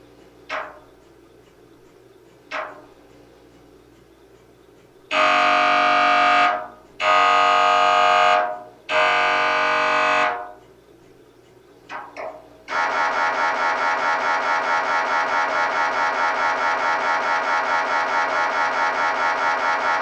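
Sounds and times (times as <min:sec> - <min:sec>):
mri scanner fast pulsing: 0:00.0 - 0:20.0
mri scanner buzzing tones: 0:04.6 - 0:20.0.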